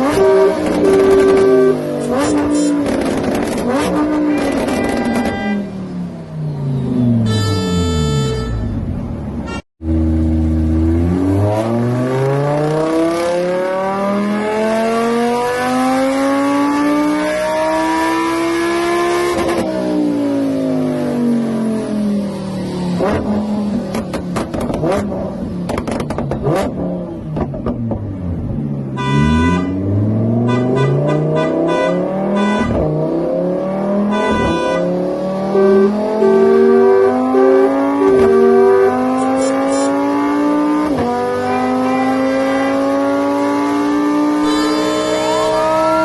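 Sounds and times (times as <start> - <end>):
engine crackles and pops: 0.1 - 5.5, 23.0 - 28.2
car engine accelerating: 9.0 - 34.2, 34.8 - 46.0.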